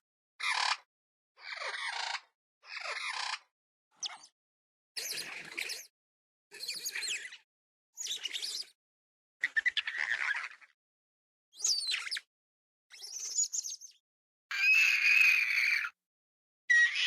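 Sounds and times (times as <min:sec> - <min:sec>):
high-pitched chirping squeals: 0:11.6 - 0:12.3, 0:12.9 - 0:16.0, 0:16.7 - 0:17.0.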